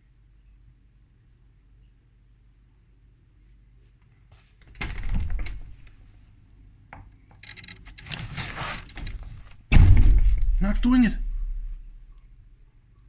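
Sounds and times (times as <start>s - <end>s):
faint low hum: 0.0s - 13.0s
rubbing and scraping: 7.6s - 12.0s.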